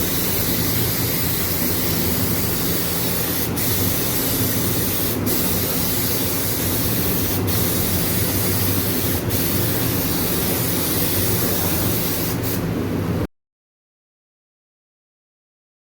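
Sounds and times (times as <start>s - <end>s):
compressed air hissing: 0.0s - 12.7s.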